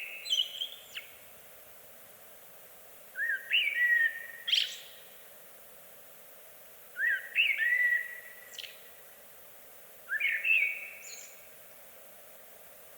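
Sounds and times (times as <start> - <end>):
faint steady hiss: 0.0 - 12.9
songbird whistling: 3.2 - 4.9, 7.0 - 8.8, 10.1 - 11.4.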